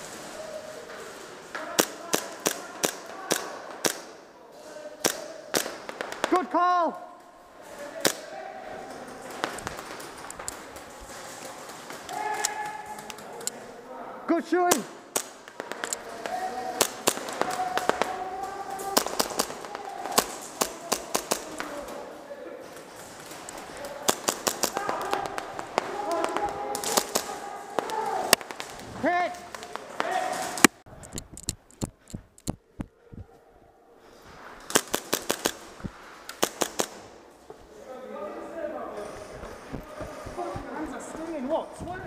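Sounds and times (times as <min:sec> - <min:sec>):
airsoft guns firing: 0:01.5 - 0:04.2, 0:05.0 - 0:06.6, 0:09.3 - 0:13.2, 0:14.7 - 0:22.0, 0:23.0 - 0:30.8, 0:34.7 - 0:37.2.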